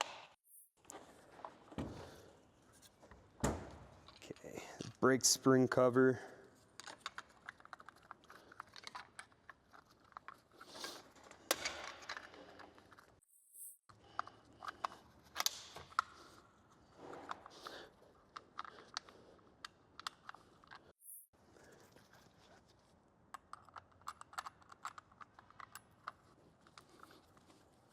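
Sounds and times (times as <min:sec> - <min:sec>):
small parts clicking and rattling: 0:06.0 - 0:22.5, 0:23.2 - 0:27.9.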